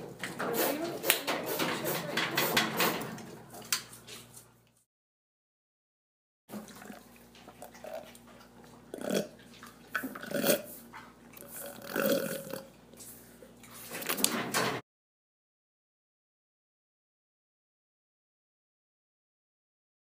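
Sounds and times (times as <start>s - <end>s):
wet slurping: 6.5s - 13.8s
chimpanzee food grunts: 8.9s - 9.4s, 10.0s - 10.8s, 11.4s - 12.7s.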